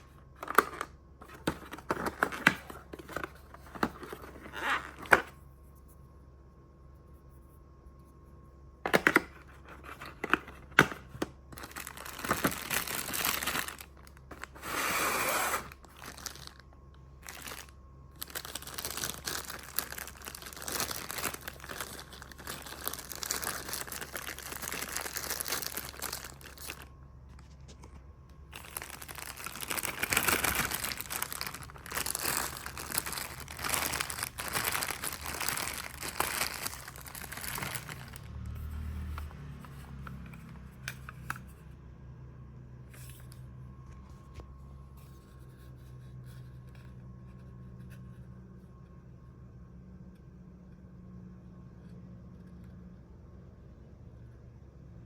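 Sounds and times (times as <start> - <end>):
plastic and paper crinkling: 0.0 - 5.4, 8.9 - 41.3.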